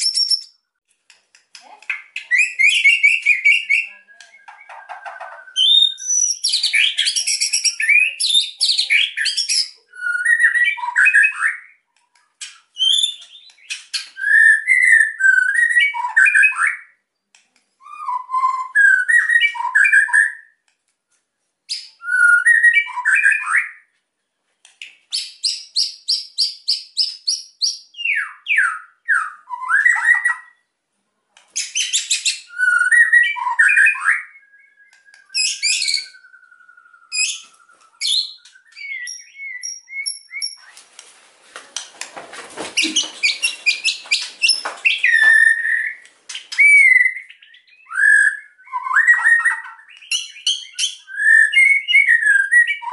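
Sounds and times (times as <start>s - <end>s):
bird singing whistled phrases: 0.0s - 0.6s, 2.2s - 11.8s, 12.7s - 17.0s, 17.8s - 20.6s, 21.7s - 23.8s, 25.1s - 30.6s, 31.6s - 40.8s, 42.8s - 52.9s
bird chattering notes: 42.8s - 47.5s.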